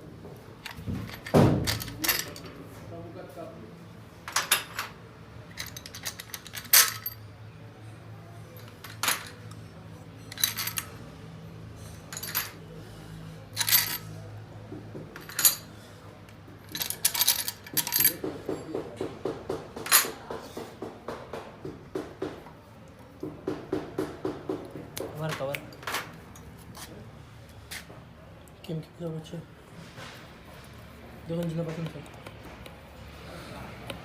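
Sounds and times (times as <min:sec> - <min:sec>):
metallic clinks and clatters: 0:00.6 - 0:02.6, 0:04.3 - 0:07.2, 0:08.6 - 0:09.5, 0:10.2 - 0:11.0, 0:11.8 - 0:12.6, 0:13.5 - 0:14.1, 0:15.2 - 0:15.7, 0:16.6 - 0:18.2.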